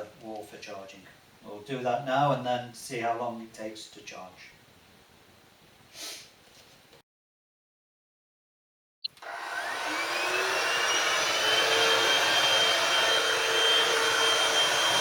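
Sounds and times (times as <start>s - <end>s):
vacuum motor whining: 9.2s - 15.0s.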